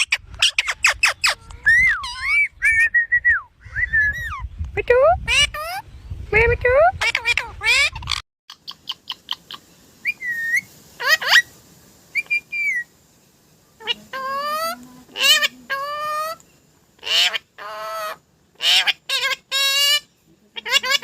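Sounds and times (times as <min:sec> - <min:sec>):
bird-like whistled calls: 0:00.0 - 0:04.5, 0:08.6 - 0:11.5, 0:12.1 - 0:12.9.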